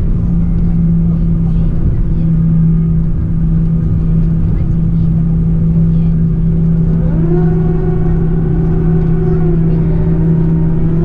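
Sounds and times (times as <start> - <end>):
idling engines hum and rumble: 0.0 - 11.0
held tone with overtones: 5.6 - 11.0.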